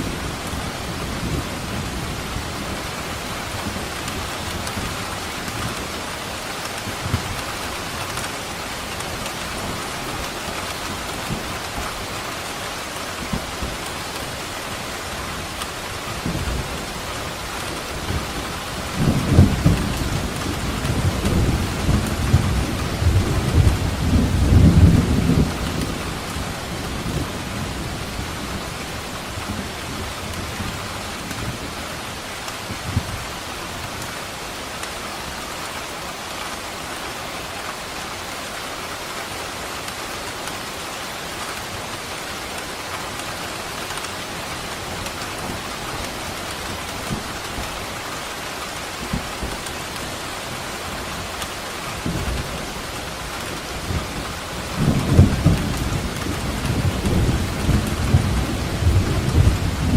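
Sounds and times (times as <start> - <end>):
steady rain falling: 0.0 - 59.9
rolling thunder rumble: 18.0 - 30.8, 53.6 - 59.9.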